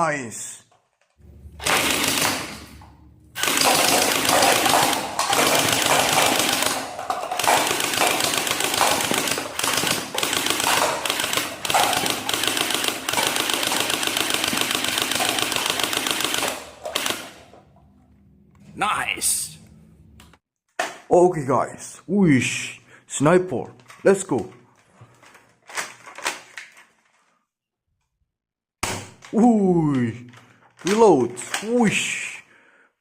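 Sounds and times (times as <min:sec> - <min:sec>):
electronic toy machine-gun fire: 0:01.6 - 0:02.7, 0:03.4 - 0:17.4.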